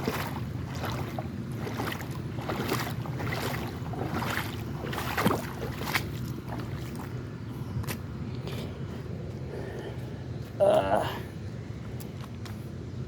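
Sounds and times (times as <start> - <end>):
sharp water splash: 0.0 - 7.1
creek water running and splashing: 0.0 - 7.4.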